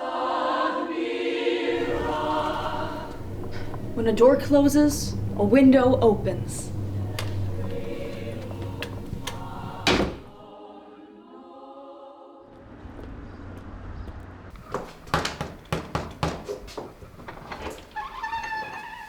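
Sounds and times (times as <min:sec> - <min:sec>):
choral chord: 0:00.0 - 0:12.6
door slamming: 0:01.7 - 0:10.4, 0:14.6 - 0:19.0
sharp irregular knocks: 0:01.8 - 0:10.4, 0:14.6 - 0:17.9.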